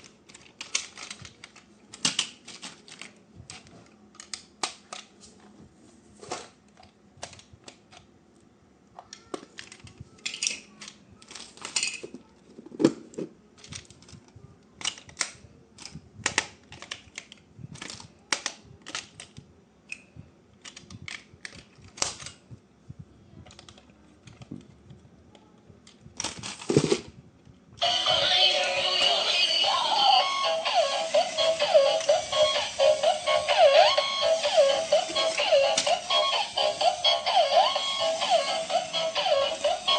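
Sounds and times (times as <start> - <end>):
plastic toy parts clicking: 0.0 - 5.1, 6.8 - 8.1, 9.0 - 12.2, 13.6 - 22.4, 23.4 - 24.6.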